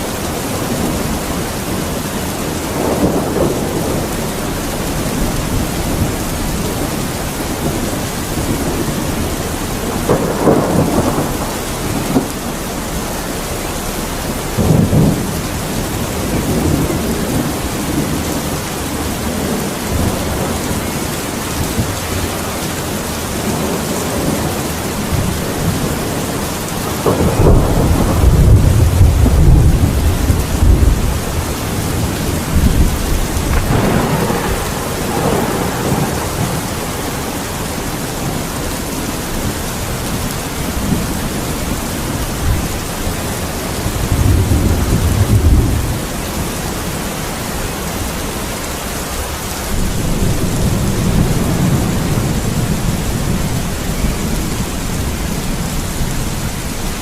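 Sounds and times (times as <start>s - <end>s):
heavy rain: 0.0s - 57.0s
thunder rumbling: 0.0s - 57.0s.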